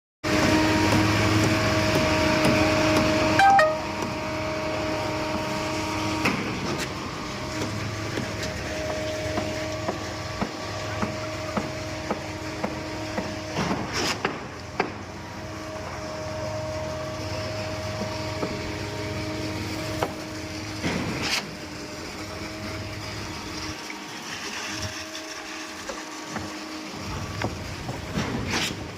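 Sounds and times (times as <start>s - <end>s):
machinery engine drone: 0.3s - 13.5s.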